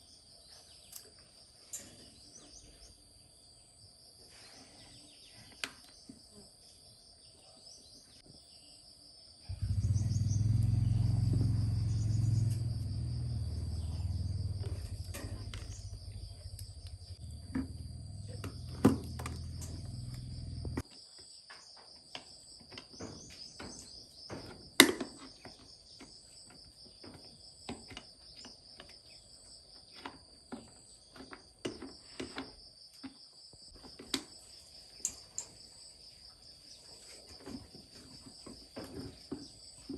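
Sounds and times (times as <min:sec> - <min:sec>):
crickets chirping: 0:00.0 - 0:39.9
loud low hum: 0:09.5 - 0:20.8.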